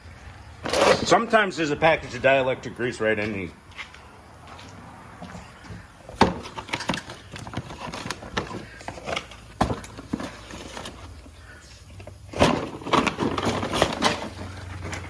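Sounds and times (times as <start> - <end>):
packaging rustling: 6.4 - 11.4, 12.0 - 15.0.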